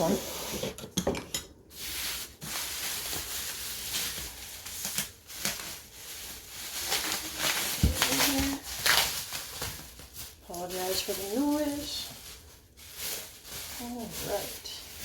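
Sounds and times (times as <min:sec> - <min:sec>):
packaging rustling and crinkling: 0:01.7 - 0:15.0.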